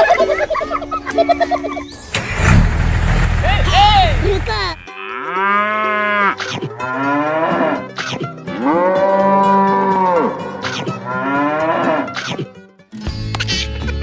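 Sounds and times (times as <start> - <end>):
cattle mooing: 4.7 - 7.9, 8.5 - 12.2.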